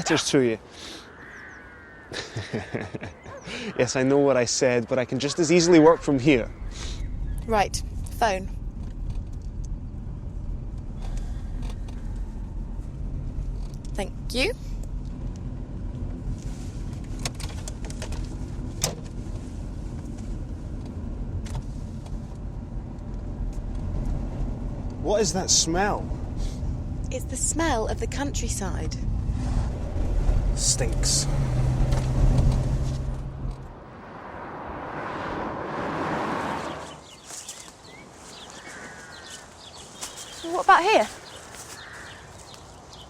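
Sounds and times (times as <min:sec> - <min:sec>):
birds chirping: 0:00.0 - 0:08.7, 0:36.2 - 0:43.0
car engine and road rumble: 0:00.0 - 0:43.0.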